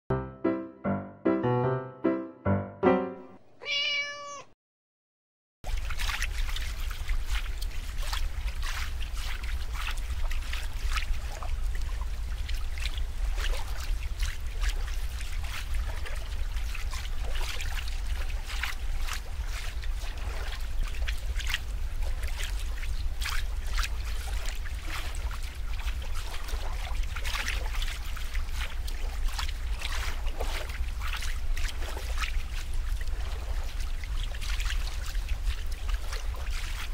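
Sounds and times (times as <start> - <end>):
electric piano jingle: 0.1 - 3.4
cat meowing: 3.6 - 4.6
running water: 5.6 - 36.9
small water splashes: 5.6 - 36.9.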